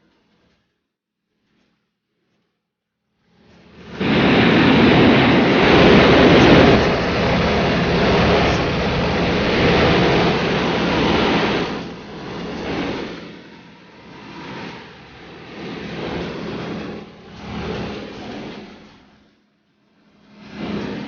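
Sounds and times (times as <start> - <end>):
propeller airplane engine: 3.6 - 19.1, 20.0 - 21.0
rushing noise: 3.8 - 18.8.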